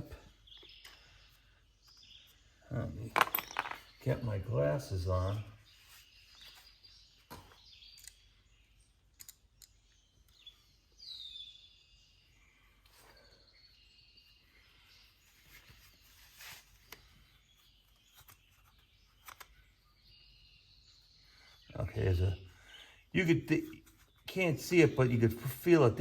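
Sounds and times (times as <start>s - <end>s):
bird chirp: 0.0s - 26.0s
small metal parts clicking: 7.9s - 8.2s, 9.1s - 9.8s.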